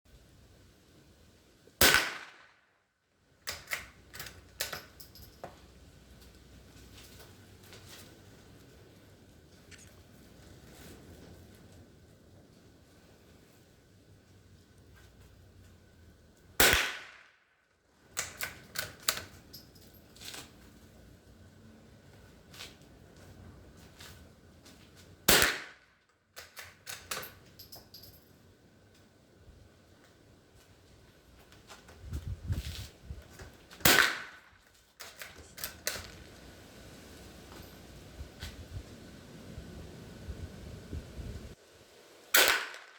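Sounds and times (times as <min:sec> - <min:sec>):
rifle shot: 0:01.8 - 0:02.6, 0:16.6 - 0:17.3, 0:25.3 - 0:25.8, 0:33.8 - 0:34.5, 0:42.3 - 0:42.9.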